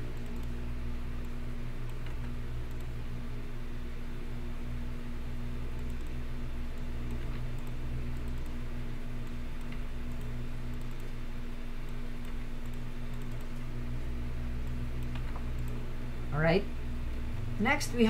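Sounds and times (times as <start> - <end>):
low electrical hum: 0.0 - 18.0
keyboard and mouse clicking: 0.1 - 0.6, 1.2 - 2.9, 5.8 - 8.6, 9.2 - 11.2, 11.8 - 13.7, 14.6 - 15.8.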